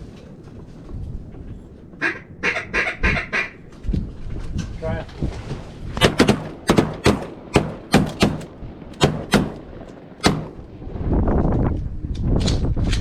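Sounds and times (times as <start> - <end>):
shotgun fire: 6.0 - 10.7.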